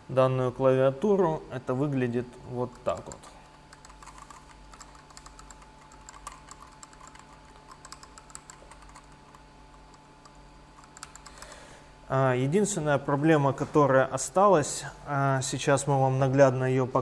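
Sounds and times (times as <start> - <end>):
low electrical hum: 0.0 - 17.0
mechanical keyboard typing: 2.7 - 11.6.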